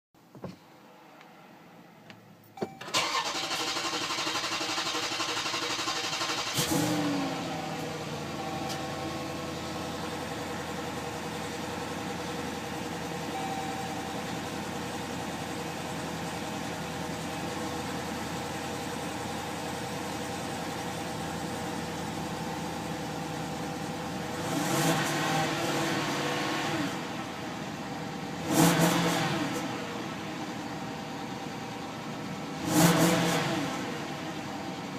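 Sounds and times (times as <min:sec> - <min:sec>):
car engine idling: 0:00.3 - 0:34.9
car engine cranking: 0:02.4 - 0:19.1
car engine revving: 0:03.0 - 0:13.2, 0:23.5 - 0:30.6, 0:32.0 - 0:34.9.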